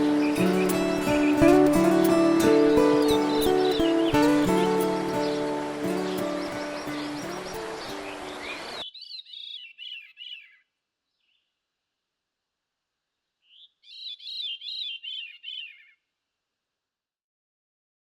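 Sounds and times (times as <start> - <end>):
music: 0.0 - 8.8
songbird singing: 0.0 - 11.4, 13.4 - 16.0.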